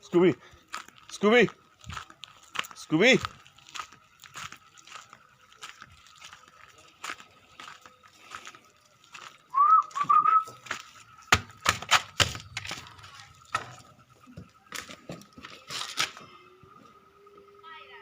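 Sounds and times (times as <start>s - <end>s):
person whistling: 9.5s - 10.6s
faint steady high tone: 12.5s - 18.0s.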